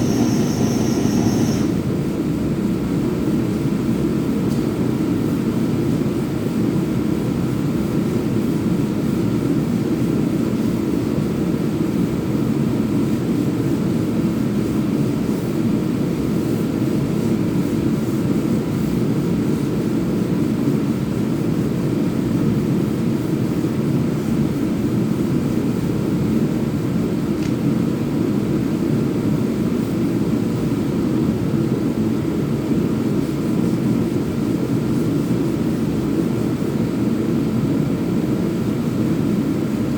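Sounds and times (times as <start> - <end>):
electric power sander running: 0.0 - 1.8.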